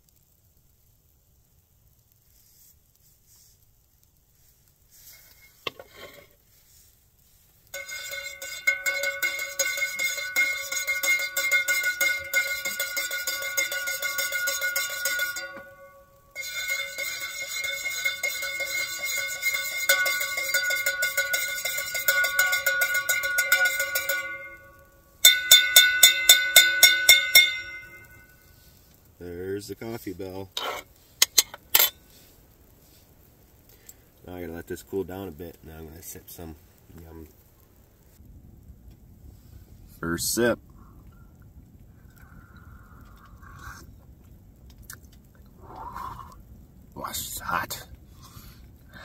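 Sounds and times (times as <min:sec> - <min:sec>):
spoon stirring in metal cup: 0:07.8 - 0:15.8, 0:16.4 - 0:24.4.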